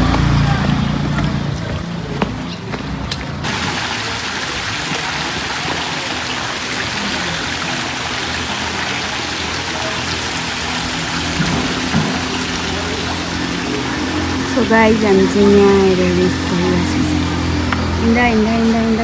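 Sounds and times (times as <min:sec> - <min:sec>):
stream water rushing: 0:00.0 - 0:19.0.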